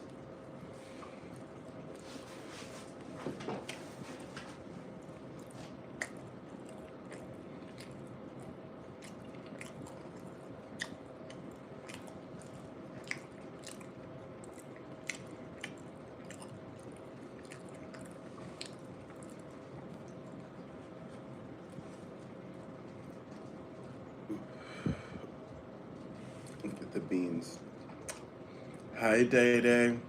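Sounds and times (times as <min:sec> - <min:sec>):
close chewing mouth sounds: 0:04.9 - 0:21.4
mouth smacks: 0:10.8 - 0:12.1.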